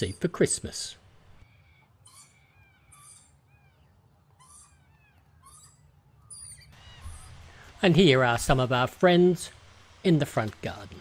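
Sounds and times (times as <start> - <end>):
faint bird calls: 1.4 - 7.7.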